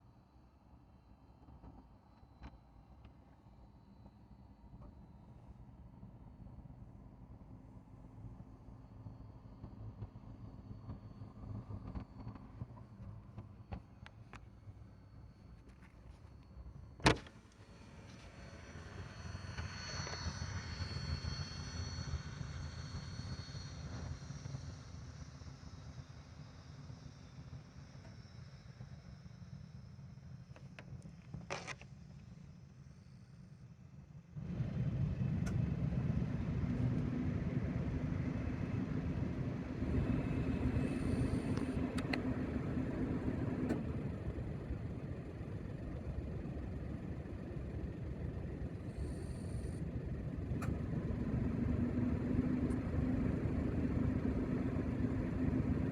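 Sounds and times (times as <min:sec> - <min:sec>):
propeller airplane engine droning: 0:03.2 - 0:32.1, 0:34.4 - 0:55.9
propeller airplane engine: 0:34.4 - 0:55.9.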